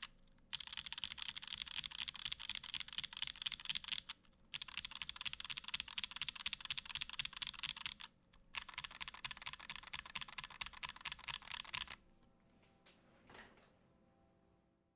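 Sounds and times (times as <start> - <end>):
mechanical keyboard typing: 0.0 - 12.0.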